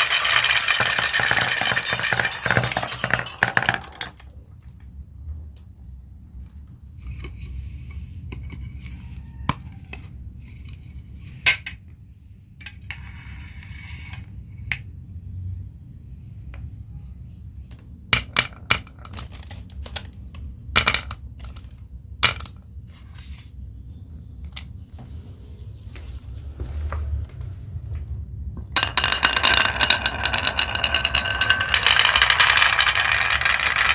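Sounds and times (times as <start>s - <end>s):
marbles rolling and clicking: 0.0s - 5.0s, 17.7s - 22.6s, 28.6s - 33.9s.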